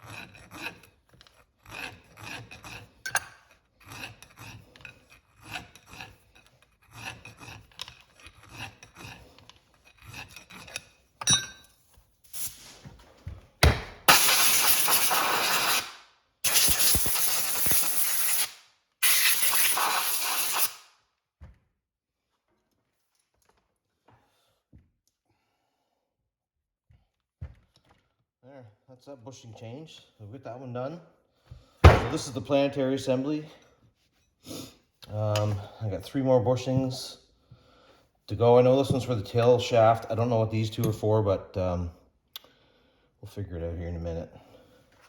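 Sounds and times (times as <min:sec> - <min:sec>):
file rasping on metal: 0:00.0 - 0:11.2.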